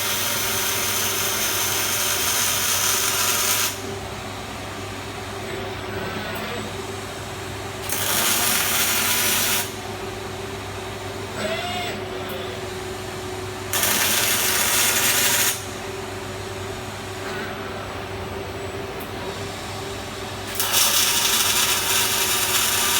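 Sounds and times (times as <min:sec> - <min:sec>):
welding arc hissing: 0:00.0 - 0:03.9, 0:07.8 - 0:09.8, 0:13.7 - 0:15.8, 0:20.4 - 0:22.9
machine hum: 0:00.0 - 0:22.9.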